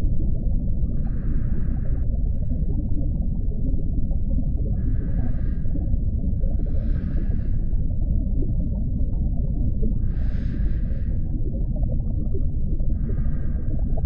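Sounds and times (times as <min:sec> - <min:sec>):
deep underwater rumble: 0:00.0 - 0:14.0
scuba regulator breathing: 0:01.0 - 0:02.6, 0:04.8 - 0:05.9, 0:06.5 - 0:07.9, 0:10.0 - 0:11.4, 0:12.9 - 0:14.0.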